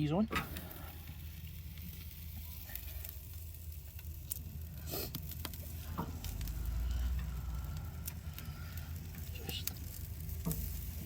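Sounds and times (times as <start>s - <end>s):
fire popping and crackling: 0.0s - 11.0s
food sizzling in a pan: 0.0s - 11.0s
low rumble: 5.6s - 11.0s.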